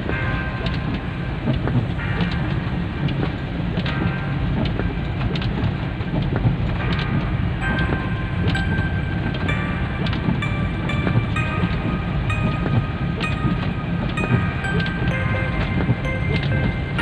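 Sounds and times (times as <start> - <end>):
car driving in heavy rain: 0.0 - 17.0.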